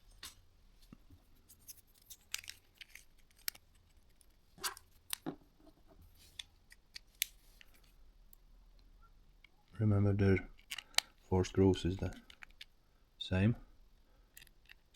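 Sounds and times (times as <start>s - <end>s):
small parts and tools clicking: 1.5s - 5.3s, 10.5s - 11.2s, 12.0s - 12.7s, 14.3s - 14.9s.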